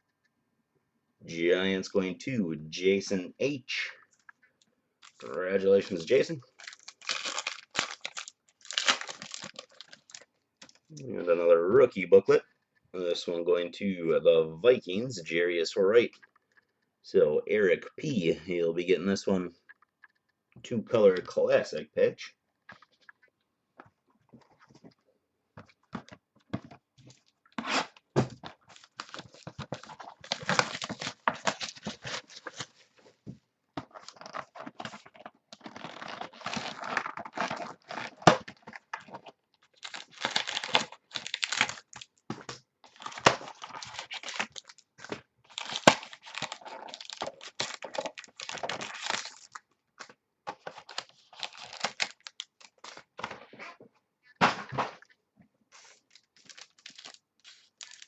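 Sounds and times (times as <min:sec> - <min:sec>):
card packaging tearing and crinkling: 0:05.0 - 0:10.8, 0:28.6 - 0:32.8, 0:33.9 - 0:49.6, 0:50.6 - 0:53.2, 0:55.8 - 0:58.0.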